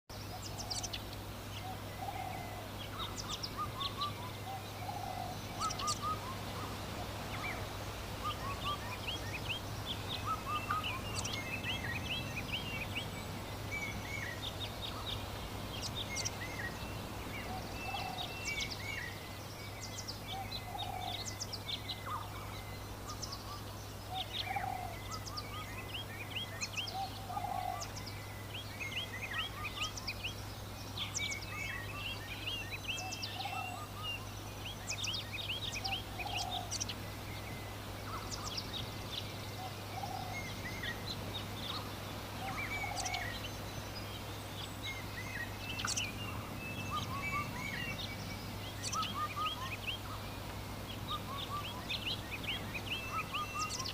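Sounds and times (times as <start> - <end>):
small birds chirping: 0.0 - 53.9
low bird call: 0.3 - 30.3.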